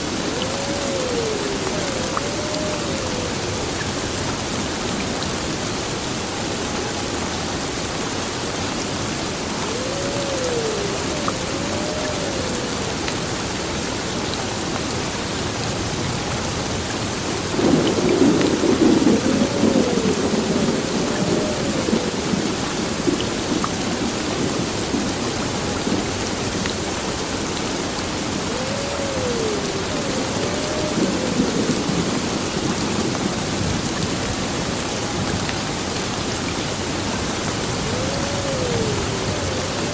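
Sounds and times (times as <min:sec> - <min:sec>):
thunder rumbling: 0:00.0 - 0:04.5, 0:09.5 - 0:13.0, 0:17.4 - 0:25.1, 0:28.4 - 0:34.4, 0:37.2 - 0:39.9
heavy rain falling: 0:00.0 - 0:39.9.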